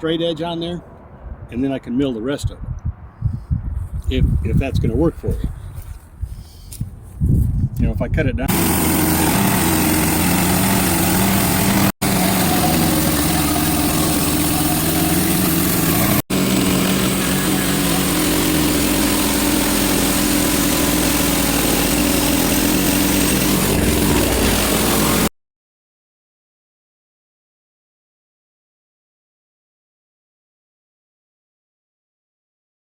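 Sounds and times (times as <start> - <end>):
sawmill engine under load: 8.4 - 25.3.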